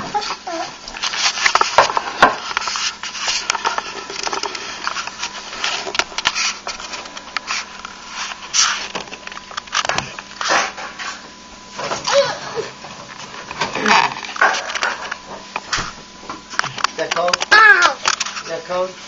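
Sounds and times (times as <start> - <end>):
dishes knocking and scraping: 1.5 - 2.5.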